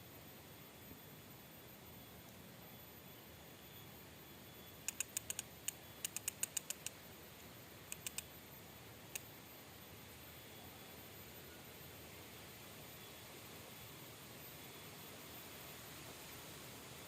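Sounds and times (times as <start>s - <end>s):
faint steady hiss: 0.0s - 17.0s
sharp high-pitched clicks: 4.8s - 7.0s, 7.9s - 8.4s.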